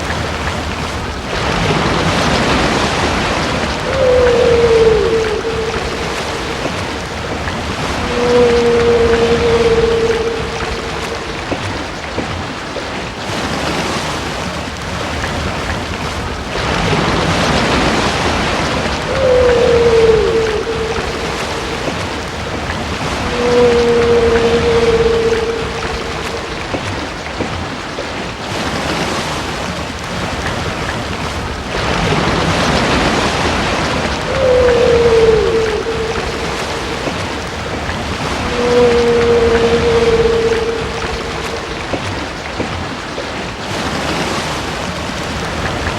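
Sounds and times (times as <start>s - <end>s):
ocean rushing: 0.0s - 45.9s
underwater sea noise: 0.0s - 45.9s
whale moaning: 1.0s - 13.0s, 16.2s - 27.8s, 31.7s - 43.4s.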